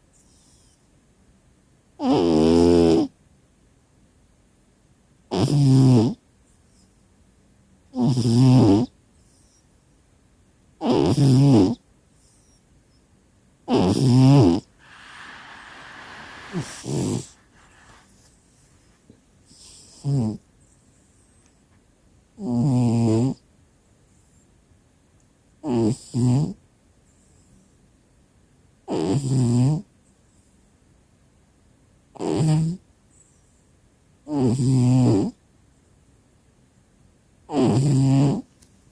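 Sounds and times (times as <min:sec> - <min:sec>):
cat snoring: 0:02.0 - 0:03.1, 0:05.3 - 0:06.2, 0:07.9 - 0:09.6, 0:10.8 - 0:12.5, 0:13.7 - 0:18.1, 0:19.5 - 0:20.4, 0:22.4 - 0:23.4, 0:25.6 - 0:26.6, 0:28.8 - 0:29.9, 0:32.2 - 0:32.8, 0:34.2 - 0:35.4, 0:37.5 - 0:38.5.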